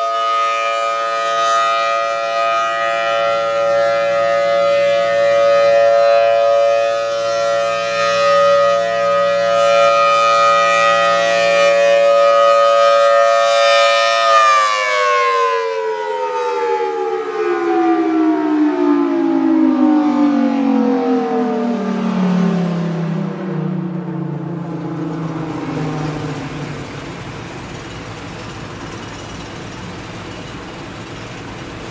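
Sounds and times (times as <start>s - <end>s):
warning siren winding down: 0.0s - 31.9s.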